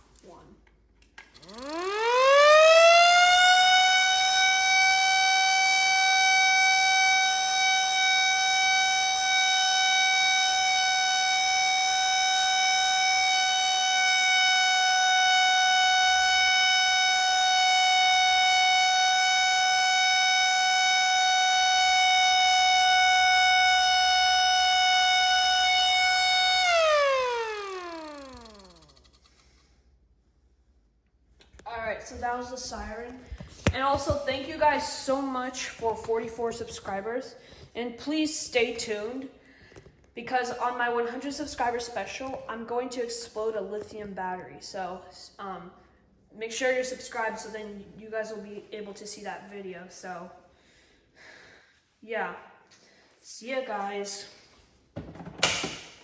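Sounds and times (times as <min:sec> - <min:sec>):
tornado siren from small speaker: 0:01.4 - 0:29.0.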